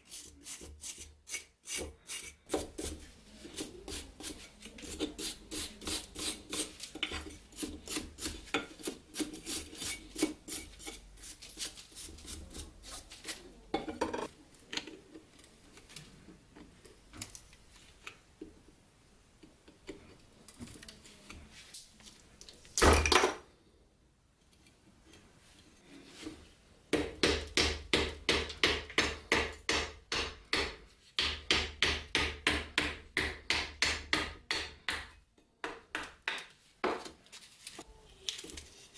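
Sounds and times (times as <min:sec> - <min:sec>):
scraping rust off metal blade: 0:00.0 - 0:13.4.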